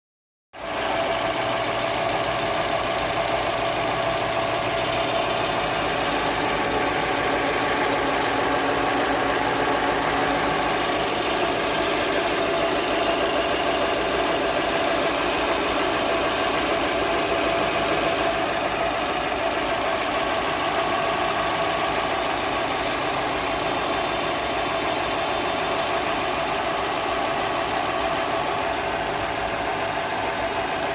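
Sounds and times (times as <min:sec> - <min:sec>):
car engine running: 0:00.6 - 0:30.9
irregular engine noise: 0:00.6 - 0:30.9.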